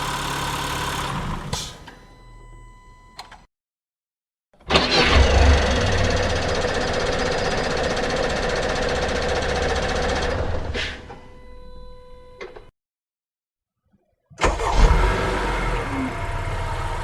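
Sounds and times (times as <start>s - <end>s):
click: 3.2s - 3.5s
car engine starting and running: 4.6s - 10.7s, 14.4s - 17.0s.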